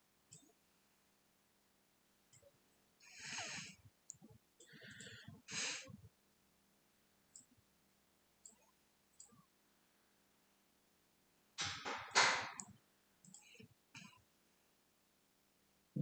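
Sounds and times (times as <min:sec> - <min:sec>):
computer mouse clicking: 0:00.3 - 0:00.5, 0:08.4 - 0:09.4, 0:11.6 - 0:14.2.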